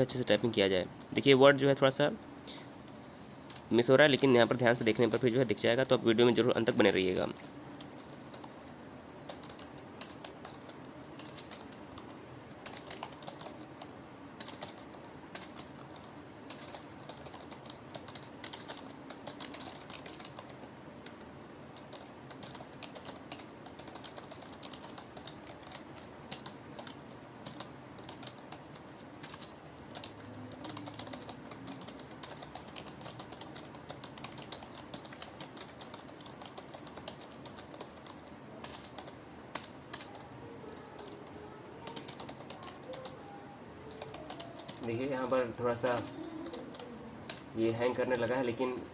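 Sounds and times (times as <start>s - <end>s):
keyboard typing clicks: 9.3s - 47.5s.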